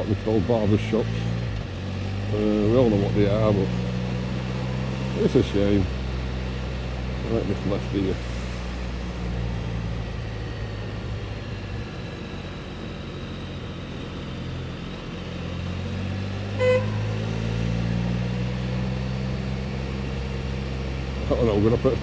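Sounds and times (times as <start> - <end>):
trike engine running: 16.5 - 22.0
short horn toot: 16.6 - 17.3.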